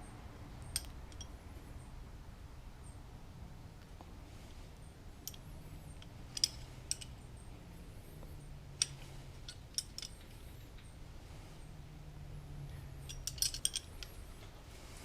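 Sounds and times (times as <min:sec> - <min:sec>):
metal parts and tools clinking: 0:00.6 - 0:01.3, 0:05.2 - 0:07.3, 0:08.8 - 0:10.9, 0:12.9 - 0:14.5.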